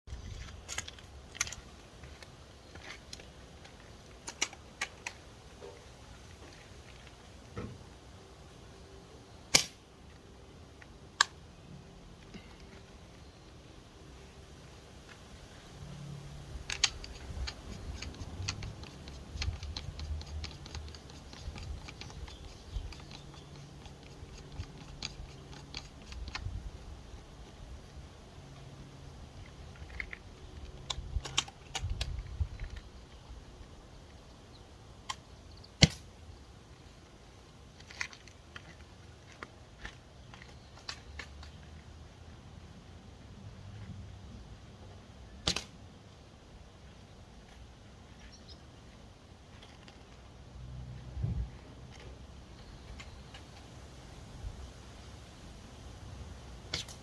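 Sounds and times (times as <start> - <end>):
rifle bolt clicks and clacks: 4.2 - 5.2, 16.5 - 26.8.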